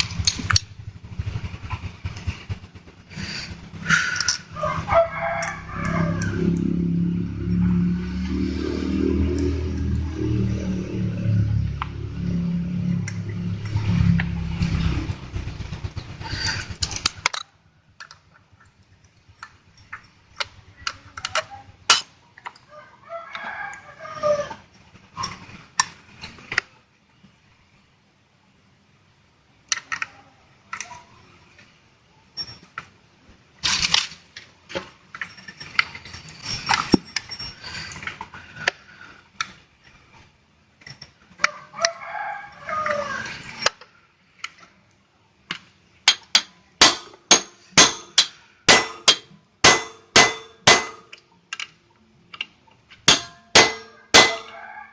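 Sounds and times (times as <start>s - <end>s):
loud low hum: 0.0s - 16.9s
chickens clucking and crowing: 3.1s - 10.7s, 22.1s - 25.7s, 41.2s - 44.4s, 53.6s - 54.9s
metal parts clicking and knocking: 4.0s - 4.6s, 16.4s - 22.6s, 33.6s - 38.8s, 40.8s - 41.2s, 45.5s - 54.5s.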